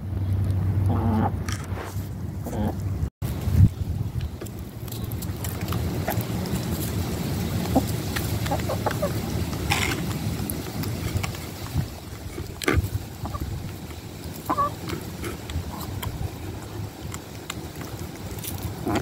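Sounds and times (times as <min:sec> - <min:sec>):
brief scratch or rustle: 0:01.5 - 0:02.2
hens pecking at food: 0:02.4 - 0:19.0.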